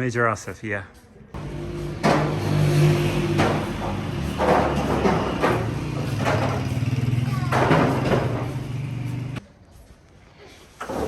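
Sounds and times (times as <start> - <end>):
rhythmic swishing: 0.0 - 9.4
vehicle engine humming: 1.4 - 9.4.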